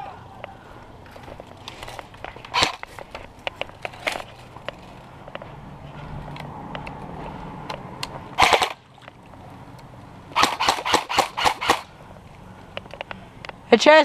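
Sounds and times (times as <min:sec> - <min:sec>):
airsoft gun firing: 0:02.5 - 0:02.8, 0:08.4 - 0:08.8, 0:10.4 - 0:11.9.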